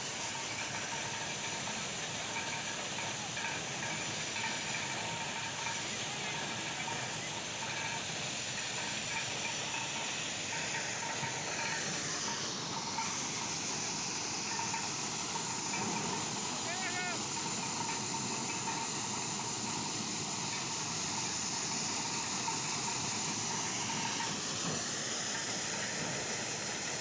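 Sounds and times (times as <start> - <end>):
faint steady whine: 0.0 - 27.0.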